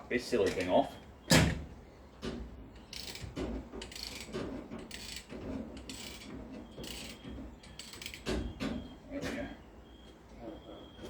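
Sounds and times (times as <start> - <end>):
ratcheting hand tool: 2.8 - 8.3.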